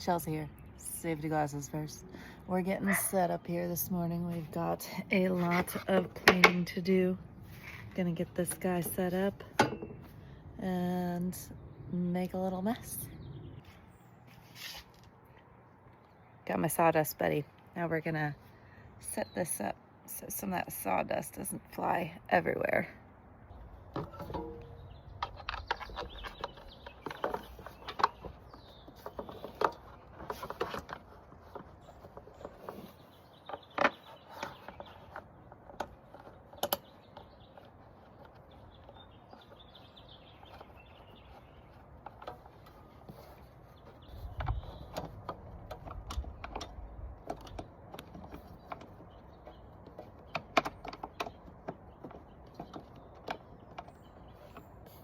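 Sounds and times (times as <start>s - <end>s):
parts clicking and knocking: 23.8s - 39.8s, 40.4s - 55.0s.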